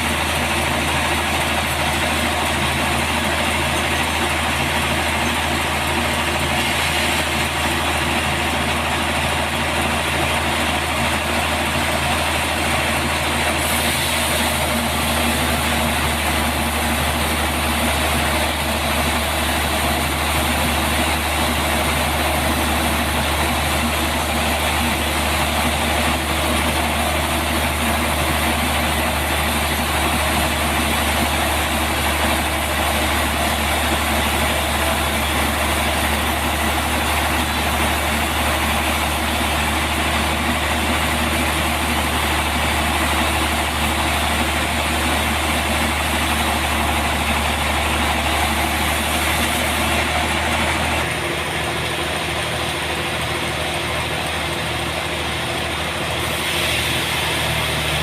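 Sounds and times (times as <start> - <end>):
bandsaw sawmill running: 0.0 - 58.0.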